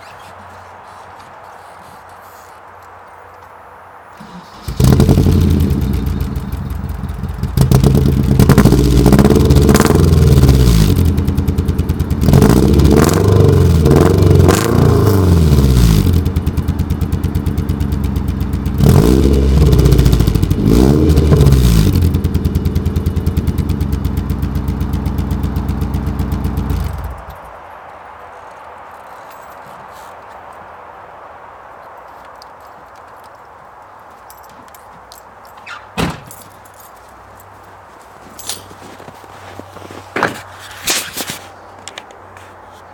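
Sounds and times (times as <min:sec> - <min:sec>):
car engine starting: 0:04.1 - 0:27.4
engine idling unevenly: 0:04.2 - 0:09.6, 0:16.1 - 0:27.3
engine revving: 0:04.2 - 0:27.2.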